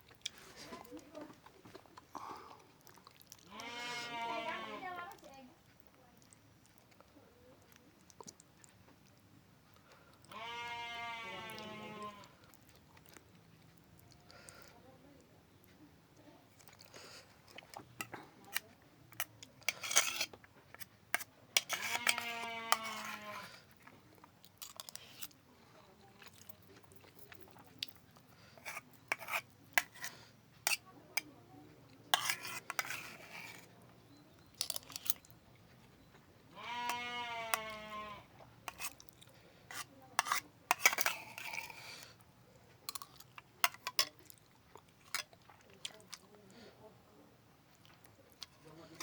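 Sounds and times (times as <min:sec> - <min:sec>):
wet chewing and lip smacks: 0:01.3 - 0:03.6, 0:05.6 - 0:10.4, 0:12.3 - 0:14.8, 0:16.5 - 0:21.7, 0:23.6 - 0:25.4, 0:26.1 - 0:30.2, 0:40.8 - 0:46.4
goat or sheep bleating: 0:03.5 - 0:05.0, 0:10.3 - 0:12.4, 0:21.7 - 0:23.6, 0:36.5 - 0:38.3.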